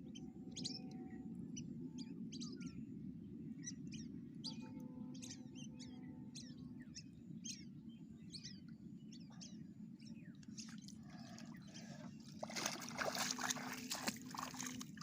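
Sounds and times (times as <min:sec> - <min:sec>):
water splashing and trickling: 0:10.5 - 0:15.0.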